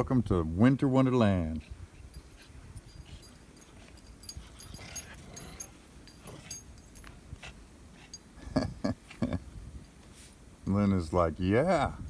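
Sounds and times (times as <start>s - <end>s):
wind rumbling on microphone: 0.0s - 5.4s, 8.4s - 9.9s, 11.4s - 12.0s.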